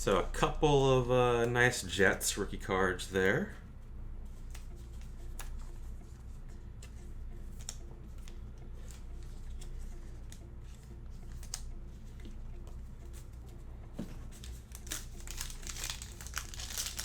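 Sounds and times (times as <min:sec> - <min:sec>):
cards clicking and snapping: 0:04.4 - 0:05.6, 0:06.8 - 0:09.7, 0:11.3 - 0:11.7, 0:14.3 - 0:17.0.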